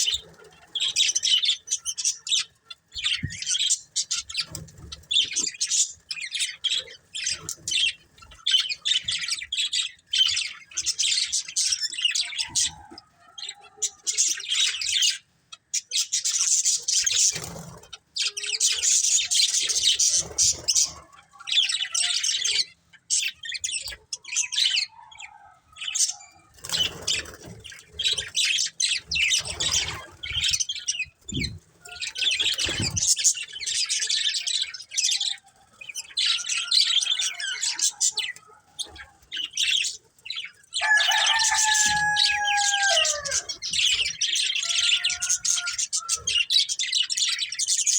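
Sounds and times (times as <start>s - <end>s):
budgerigars chattering and chirping: 0.0s - 47.9s.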